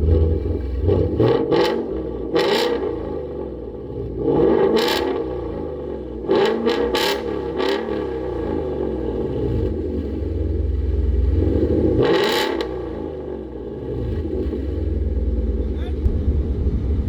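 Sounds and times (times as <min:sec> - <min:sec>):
car engine deep rumble: 0:00.0 - 0:17.0.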